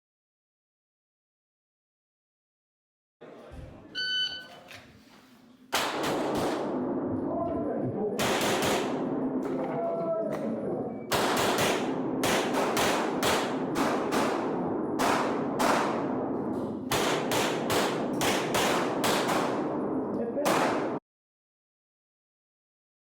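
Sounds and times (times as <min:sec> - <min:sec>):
pistol shots echoing indoors: 0:05.7 - 0:21.0.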